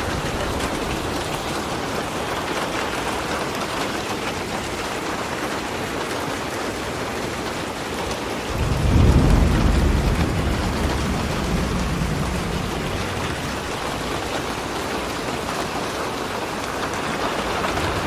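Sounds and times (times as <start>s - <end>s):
thunder rumble: 0.0s - 2.9s, 8.5s - 16.0s, 17.1s - 18.0s
steady rain falling: 0.0s - 18.0s.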